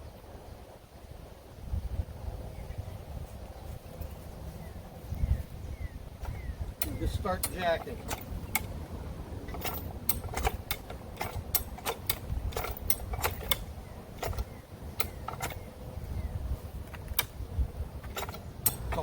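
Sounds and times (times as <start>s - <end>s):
farm jack clicking and clanking: 6.2s - 15.7s, 16.8s - 17.4s, 18.0s - 19.0s.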